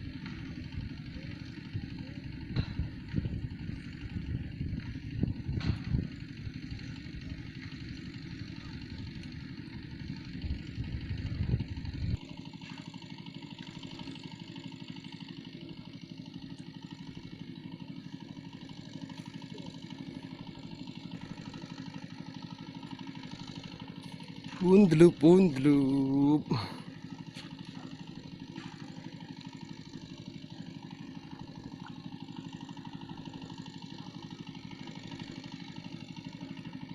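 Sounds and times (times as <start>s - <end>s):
small engine running: 0.0s - 36.9s.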